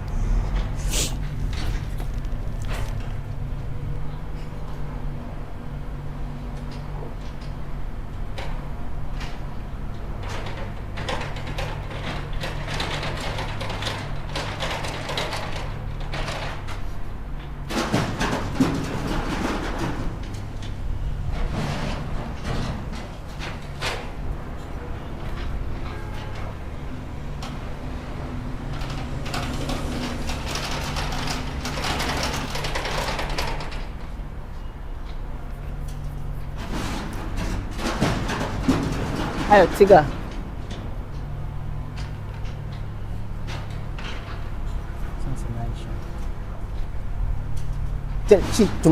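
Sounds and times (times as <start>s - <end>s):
clattering and scraping: 0.0s - 4.5s, 28.6s - 34.2s, 35.0s - 40.9s
steady low hum: 0.0s - 4.6s, 34.0s - 37.8s
engine humming: 0.0s - 6.7s, 26.5s - 48.9s.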